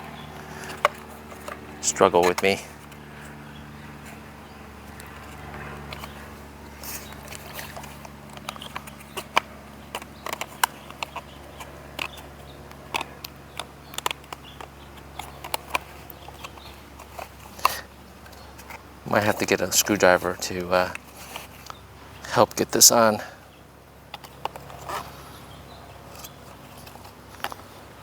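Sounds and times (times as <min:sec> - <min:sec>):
rubber and plastic scraping: 0:00.0 - 0:03.4, 0:04.0 - 0:21.8, 0:24.0 - 0:28.0
steady low hum: 0:00.0 - 0:28.0
clicks and taps of plastic parts: 0:07.1 - 0:19.5.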